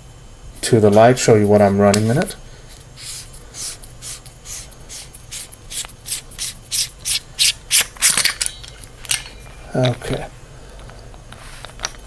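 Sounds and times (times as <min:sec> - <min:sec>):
hands rubbing knurled metal: 0:03.0 - 0:07.6.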